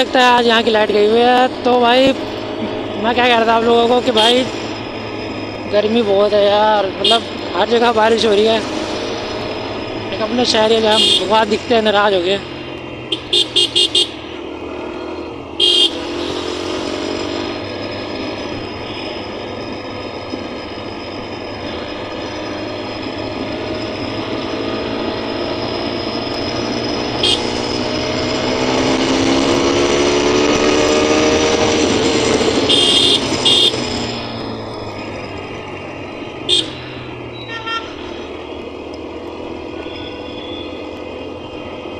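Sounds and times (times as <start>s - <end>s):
motorcycle engine accelerating: 0.0s - 41.9s
road noise in traffic: 0.0s - 41.9s
short vehicle horn toots: 10.9s - 11.3s, 15.6s - 16.0s, 27.2s - 27.5s, 32.7s - 33.8s, 36.5s - 36.8s, 37.4s - 38.0s, 39.8s - 40.8s.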